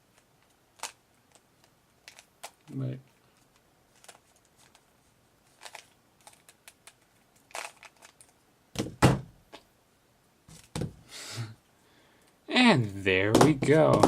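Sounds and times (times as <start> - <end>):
plastic cube clicking: 0.8 - 2.7, 5.6 - 8.3.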